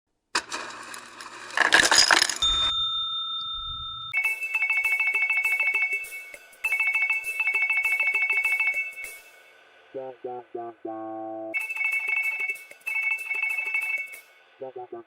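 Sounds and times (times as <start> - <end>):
trilling two-note ringtone: 2.4 - 9.3, 11.6 - 14.2
steady electronic beep: 11.6 - 14.2.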